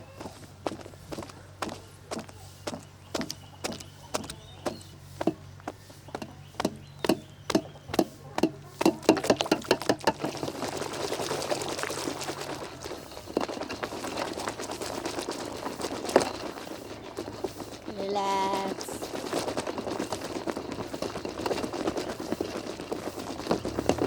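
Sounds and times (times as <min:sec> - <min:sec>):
water splashing in strokes: 0:08.8 - 0:24.0
water pouring: 0:09.1 - 0:24.0.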